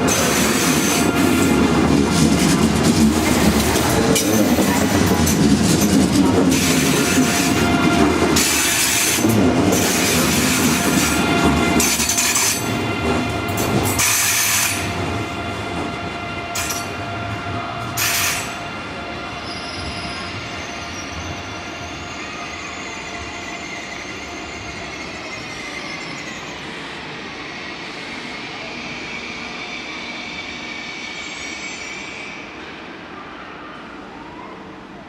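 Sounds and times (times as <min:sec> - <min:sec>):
train wheels squealing: 0:00.0 - 0:02.5, 0:03.2 - 0:12.9, 0:13.5 - 0:15.6, 0:16.5 - 0:34.7
train rumble: 0:00.0 - 0:20.6.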